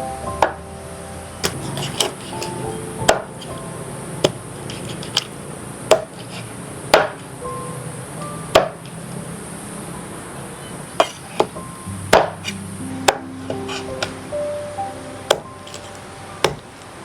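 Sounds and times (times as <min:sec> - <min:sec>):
knife chopping on cutting board: 0:01.4 - 0:03.6, 0:04.2 - 0:05.3, 0:05.9 - 0:07.2, 0:11.0 - 0:14.2, 0:15.3 - 0:16.7.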